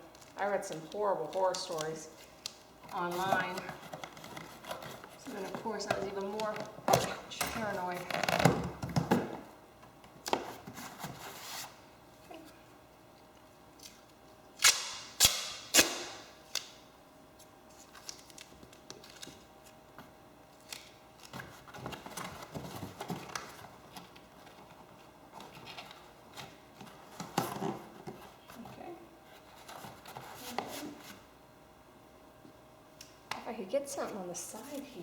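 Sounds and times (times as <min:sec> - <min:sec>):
sharp snaps: 0:14.6 - 0:16.7.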